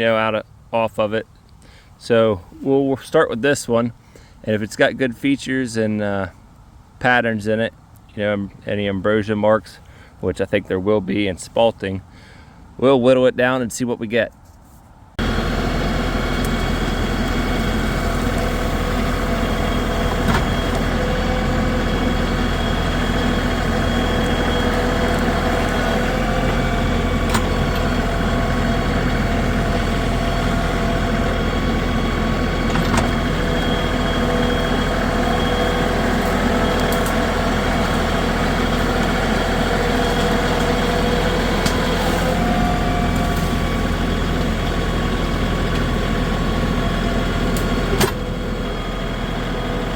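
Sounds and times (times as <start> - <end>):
tractor diesel engine running: 15.2 - 49.9.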